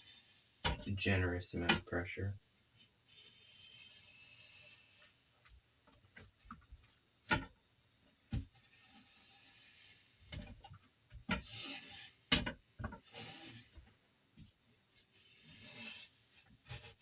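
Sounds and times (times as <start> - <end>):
scratchy rubbing on heater pad: 0.0 - 1.3, 3.0 - 5.3, 8.6 - 10.2, 11.4 - 12.3, 13.0 - 13.9, 15.0 - 17.0.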